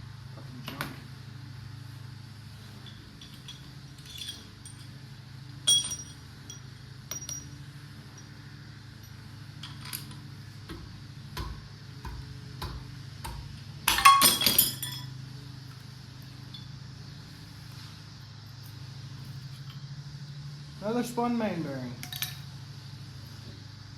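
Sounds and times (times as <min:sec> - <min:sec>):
steady low hum: 0:00.0 - 0:23.9
metal tools clinking: 0:02.7 - 0:05.0, 0:05.6 - 0:08.4, 0:13.9 - 0:15.2, 0:22.0 - 0:22.4
metal clattering: 0:02.8 - 0:05.0, 0:05.7 - 0:07.5, 0:13.9 - 0:15.1.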